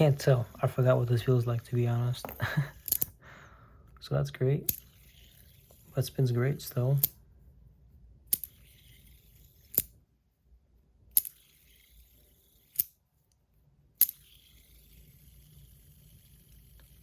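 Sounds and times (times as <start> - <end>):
fidget spinner metallic clicks: 0.0 - 3.2, 4.6 - 7.2, 8.3 - 10.0, 11.1 - 13.0, 14.0 - 17.0.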